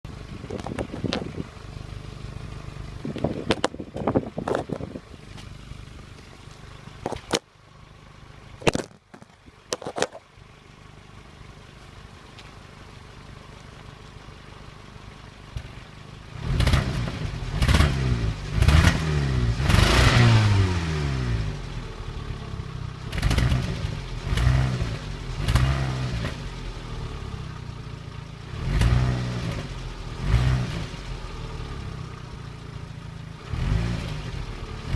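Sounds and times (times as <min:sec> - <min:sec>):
car engine idling: 0:00.0 - 0:34.9
engine revving: 0:16.3 - 0:21.9, 0:23.0 - 0:27.3, 0:28.5 - 0:31.9, 0:33.4 - 0:34.9.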